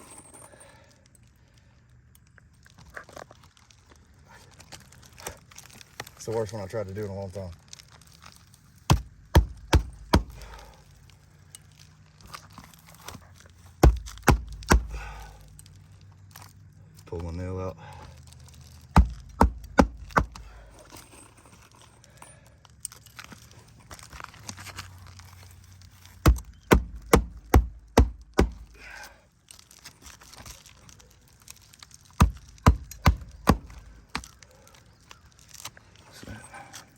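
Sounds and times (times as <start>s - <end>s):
shingle crinkling: 0.0s - 36.9s
hammer striking roof shingle: 8.9s - 10.7s, 13.8s - 15.4s, 18.9s - 20.6s, 26.2s - 28.8s, 32.2s - 34.3s.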